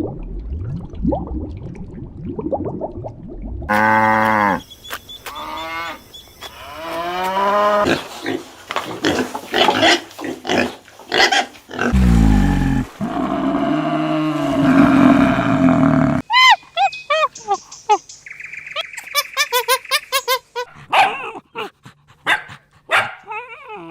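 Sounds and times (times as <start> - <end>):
low drawn-out animal call: 11.9 - 16.3.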